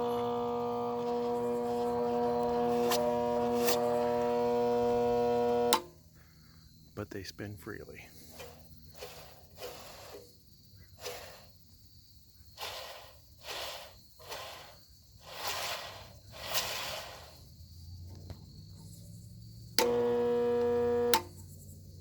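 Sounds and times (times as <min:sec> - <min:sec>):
sander belt scratchy swishes: 0:00.0 - 0:05.0, 0:12.6 - 0:17.4
faint low motor hum: 0:00.0 - 0:06.6, 0:18.8 - 0:22.0.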